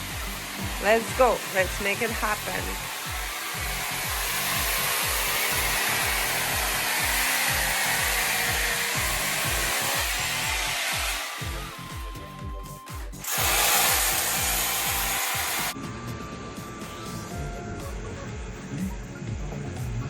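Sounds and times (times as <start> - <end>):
power tool rushing noise: 0.0 - 12.3, 13.2 - 15.8
background music with beat: 0.0 - 20.0.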